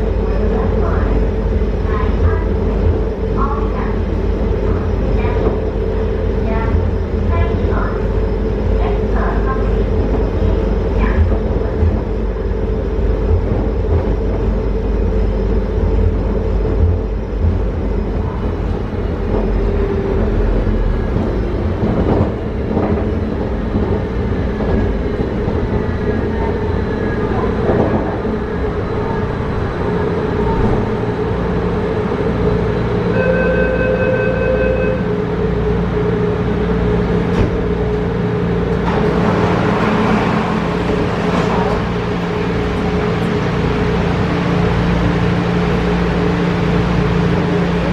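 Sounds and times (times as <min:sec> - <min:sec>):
train rumbling on rails: 0:00.0 - 0:47.9
train motor whine: 0:28.9 - 0:47.9.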